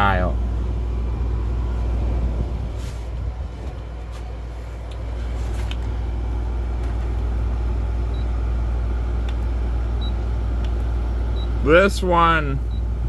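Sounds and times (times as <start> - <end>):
air conditioner humming: 0.0 - 13.0.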